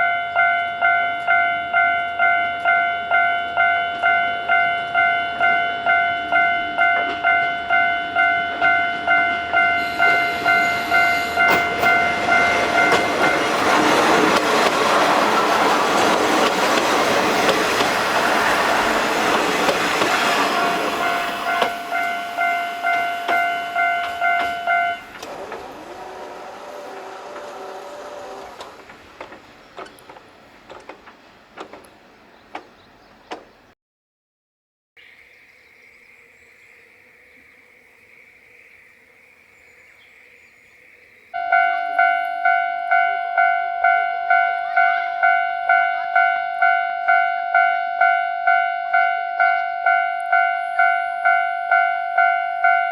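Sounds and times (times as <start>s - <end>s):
crossing alarm bell ringing: 0.0s - 29.0s, 41.4s - 52.9s
diesel train rumble: 0.0s - 33.7s
wheels clicking on rail joints: 0.0s - 33.8s.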